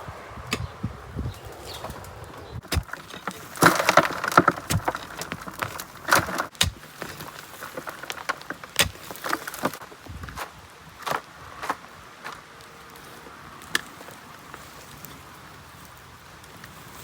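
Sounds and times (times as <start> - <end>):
digging tool scraping rocky soil: 0.4 - 11.8.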